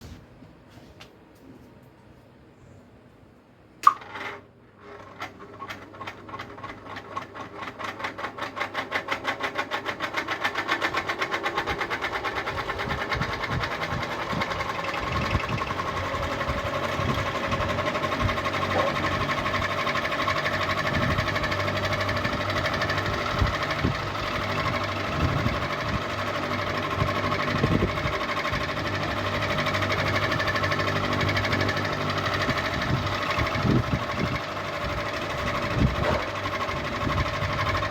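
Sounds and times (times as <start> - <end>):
ceiling fan ticking and rattling: 3.8 - 37.9
low motor hum: 12.4 - 37.9.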